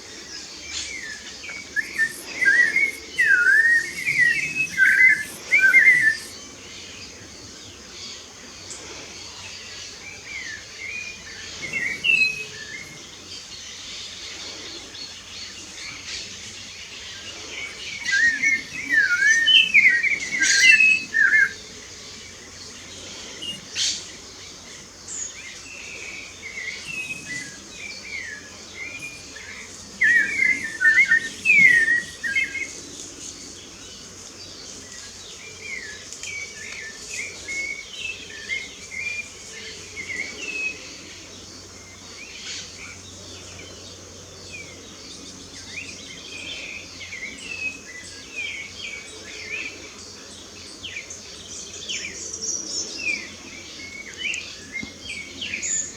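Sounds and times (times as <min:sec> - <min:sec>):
steady high hiss: 0:00.0 - 0:42.9
birds chirping and singing: 0:00.7 - 0:06.5, 0:11.4 - 0:13.3, 0:17.4 - 0:21.6, 0:25.1 - 0:33.7.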